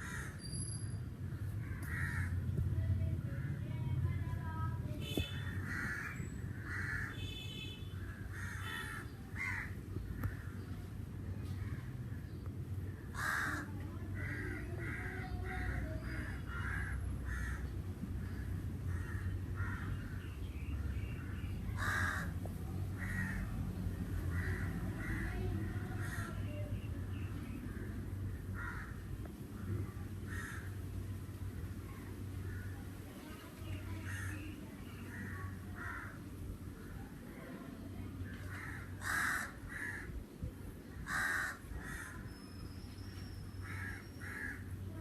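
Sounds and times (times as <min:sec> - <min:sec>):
crows cawing: 0:00.0 - 0:00.4, 0:01.6 - 0:02.4, 0:05.4 - 0:07.4, 0:08.0 - 0:10.7, 0:12.9 - 0:20.2, 0:21.8 - 0:22.4, 0:23.0 - 0:23.6, 0:24.2 - 0:26.4, 0:27.7 - 0:29.0, 0:29.6 - 0:30.8, 0:34.0 - 0:34.5, 0:35.1 - 0:36.2, 0:38.4 - 0:40.2, 0:41.0 - 0:42.3, 0:43.6 - 0:44.8
steady low rumble: 0:01.0 - 0:07.2, 0:08.0 - 0:33.1.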